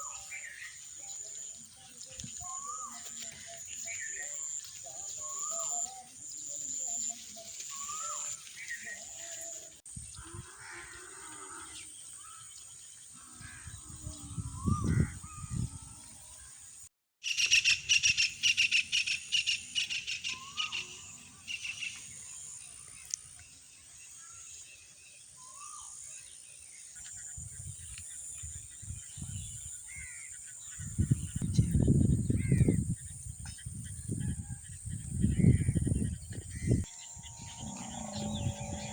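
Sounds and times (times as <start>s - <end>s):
birds chirping: 17.2s - 38.9s.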